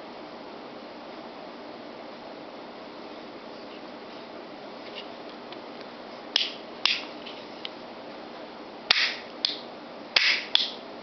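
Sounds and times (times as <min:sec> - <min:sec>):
pistol hammers clicking: 0:06.4 - 0:07.1, 0:08.9 - 0:09.6, 0:10.2 - 0:10.8.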